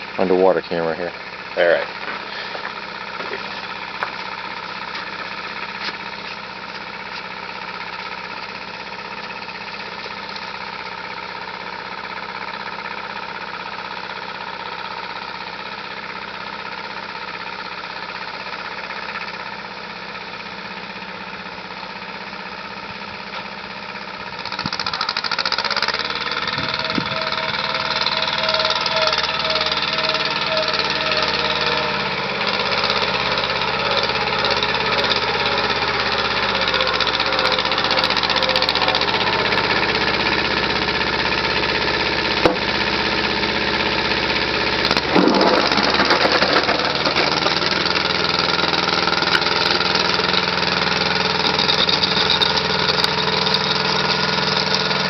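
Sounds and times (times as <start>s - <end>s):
tractor diesel engine running: 0.0s - 55.0s.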